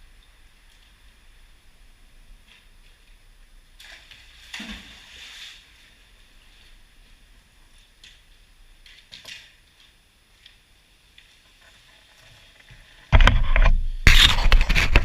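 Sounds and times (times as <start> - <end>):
water splashing and sloshing: 2.5 - 9.8.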